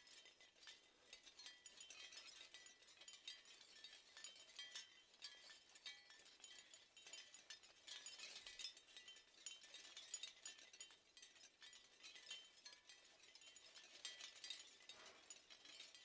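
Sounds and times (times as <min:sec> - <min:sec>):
seashell wind chimes tinkling: 0:01.4 - 0:16.0.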